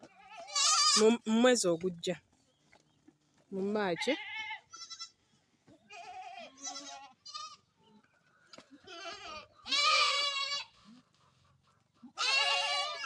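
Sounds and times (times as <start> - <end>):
goats bleating: 0.0 - 1.2, 3.9 - 5.2, 5.9 - 7.7, 8.7 - 10.8, 12.1 - 13.0.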